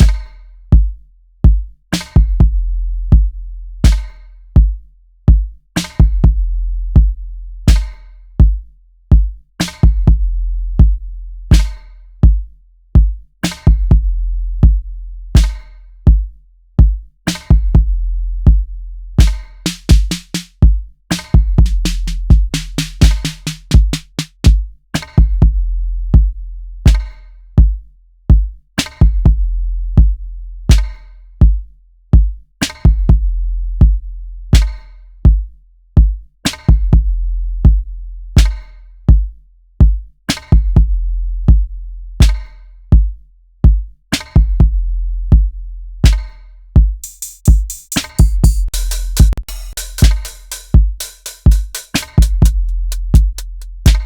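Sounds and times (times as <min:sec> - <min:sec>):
deep kick drums: 0:00.0 - 0:54.0
bright hi-hats: 0:19.2 - 0:24.5, 0:47.0 - 0:54.0
sharp snare hits: 0:47.3 - 0:48.4, 0:49.2 - 0:54.0.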